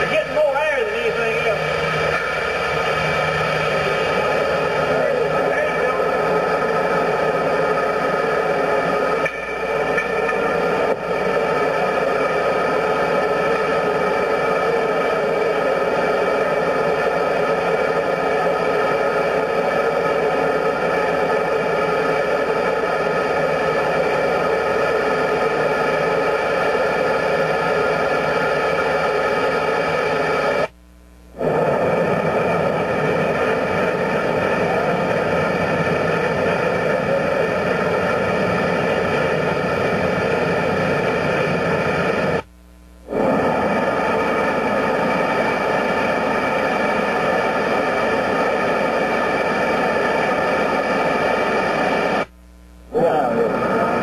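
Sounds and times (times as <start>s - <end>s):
gas burners rushing: 0.0s - 30.7s.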